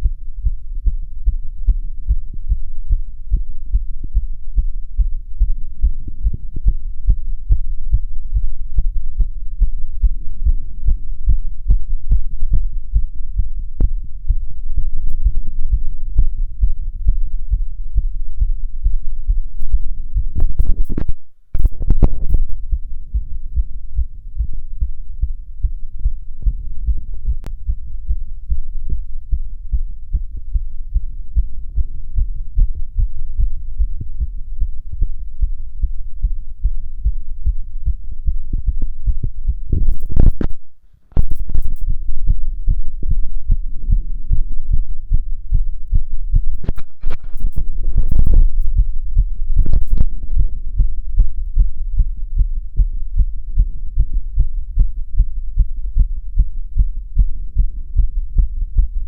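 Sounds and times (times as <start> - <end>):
fast heartbeat through stethoscope: 0.0 - 59.0
stethoscope scraping noise: 46.6 - 48.7.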